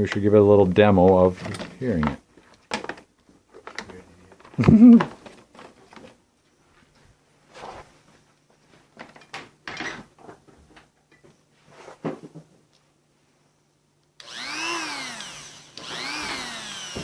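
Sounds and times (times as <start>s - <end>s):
rotary tool motor whine: 14.2s - 17.0s.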